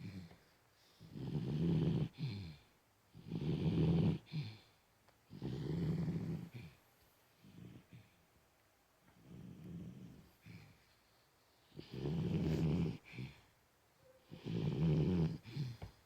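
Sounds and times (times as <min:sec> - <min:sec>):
dog snoring: 0:00.0 - 0:06.8, 0:07.4 - 0:08.2, 0:09.1 - 0:10.9, 0:11.6 - 0:13.4, 0:14.1 - 0:16.0.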